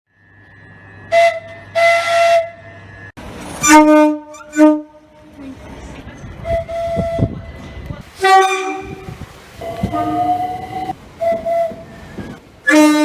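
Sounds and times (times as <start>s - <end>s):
train horn blasts: 1.1s - 2.6s, 3.6s - 5.4s, 6.4s - 7.4s, 8.2s - 13.0s.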